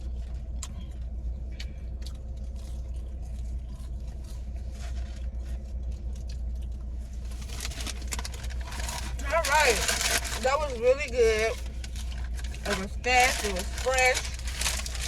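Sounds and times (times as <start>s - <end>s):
person eating fries: 0.0s - 15.0s
car cabin rumble: 7.1s - 15.0s.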